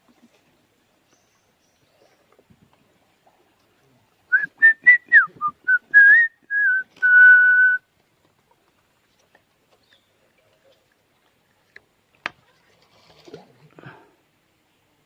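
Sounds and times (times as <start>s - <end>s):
person whistling a tune: 4.3s - 7.8s.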